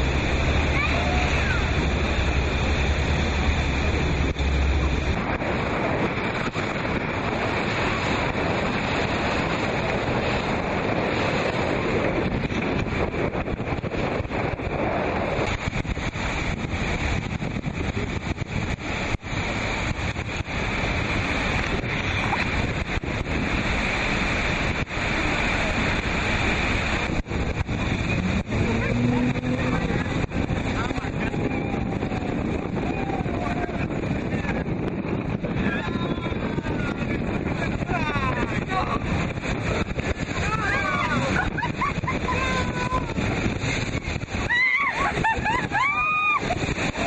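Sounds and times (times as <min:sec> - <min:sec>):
river rapids rushing: 0:00.0 - 0:12.7, 0:14.9 - 0:34.5, 0:35.6 - 0:47.0
wind buffeting microphone: 0:00.0 - 0:47.0.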